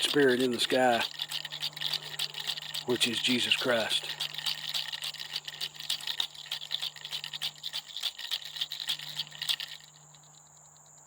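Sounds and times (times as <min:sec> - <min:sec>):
small hard objects rattling: 0:00.0 - 0:10.4.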